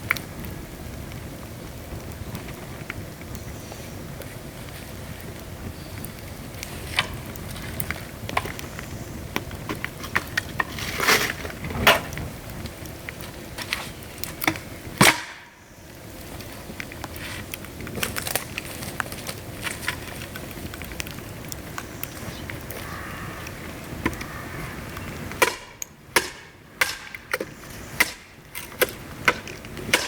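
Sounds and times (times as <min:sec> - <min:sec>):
dry bamboo cracking and snapping: 0:04.2 - 0:30.0.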